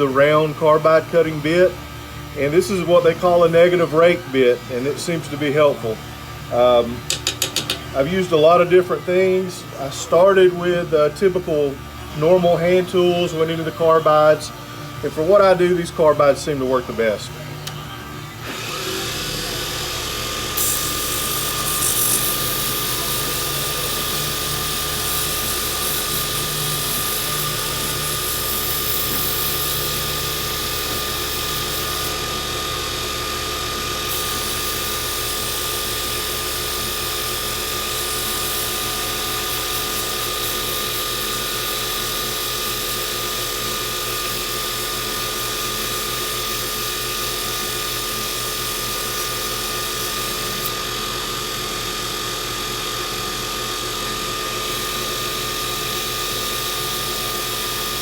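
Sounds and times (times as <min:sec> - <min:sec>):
wood lathe motor running: 0:18.4 - 0:58.0.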